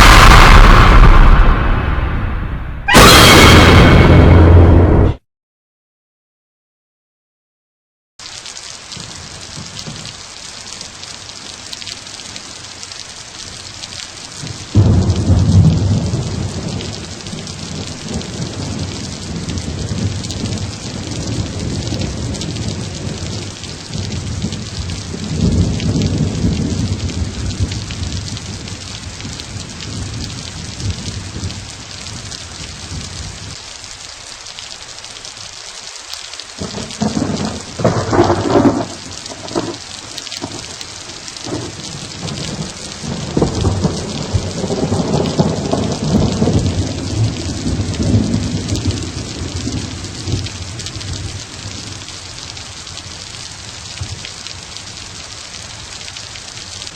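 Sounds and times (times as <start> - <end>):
rolling thunder: 0.0 - 5.2, 14.4 - 33.6, 36.6 - 52.1
rain hiss: 8.2 - 56.9.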